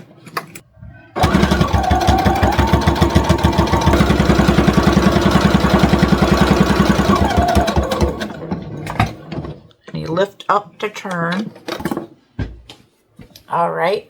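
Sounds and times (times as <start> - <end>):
sewing machine clicks: 1.2 - 9.3
sewing machine stitching: 1.2 - 9.7.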